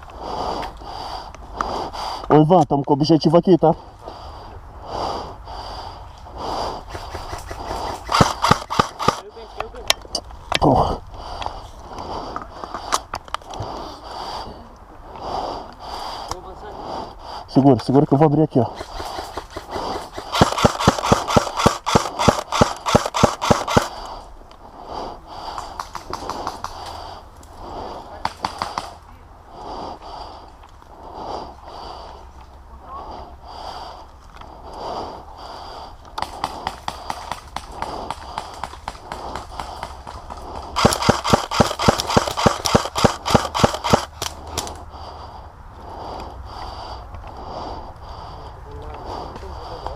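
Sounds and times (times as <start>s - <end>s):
airsoft rifle firing shots: 6.9s - 9.2s, 18.8s - 24.0s, 28.2s - 29.0s, 40.8s - 44.7s.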